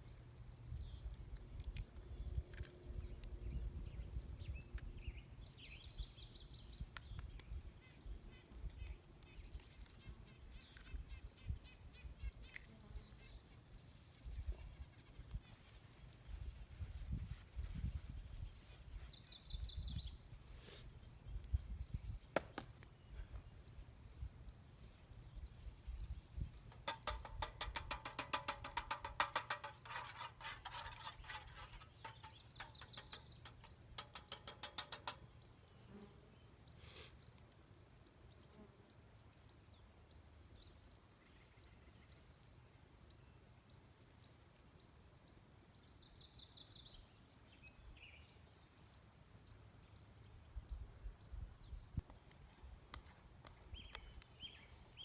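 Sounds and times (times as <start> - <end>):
fork beating eggs in metal pan: 26.7 - 35.3.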